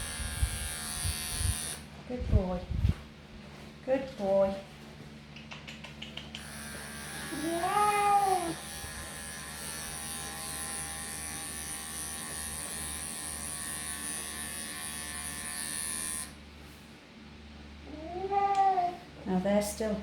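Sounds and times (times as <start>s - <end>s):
electric clippers running: 0.0s - 1.9s, 6.4s - 16.4s.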